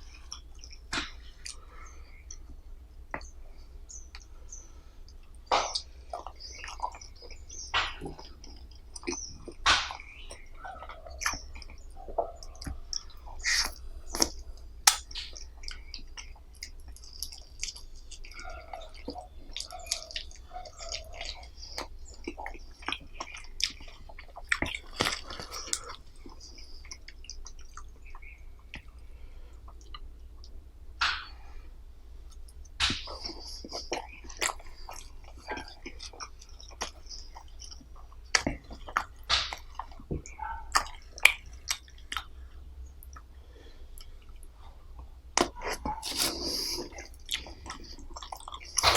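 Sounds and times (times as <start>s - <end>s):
person chewing food: 0.0s - 3.3s, 3.9s - 31.3s, 32.3s - 48.9s
lip smacks: 0.2s - 2.5s, 5.1s - 29.0s, 32.4s - 42.3s, 44.0s - 48.9s
sharp mouth clicks: 12.4s - 18.4s, 45.4s - 48.9s.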